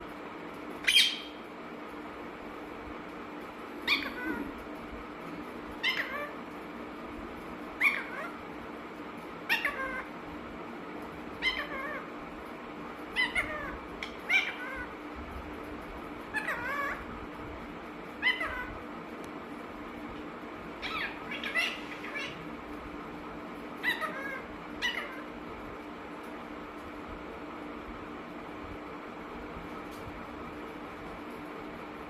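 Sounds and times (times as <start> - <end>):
faint steady hum: 0.0 - 32.0
parakeet cat-like calls: 0.8 - 1.5, 3.8 - 4.6, 5.7 - 6.6, 7.8 - 8.5, 9.4 - 10.3, 11.3 - 12.3, 13.0 - 15.1, 16.2 - 17.2, 18.1 - 19.0, 20.7 - 22.8, 23.6 - 25.4.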